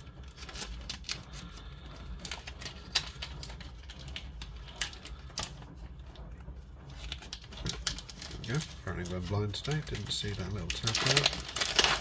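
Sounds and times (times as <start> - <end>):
packet tearing with clicks and taps: 0.2 - 5.6, 6.9 - 12.0.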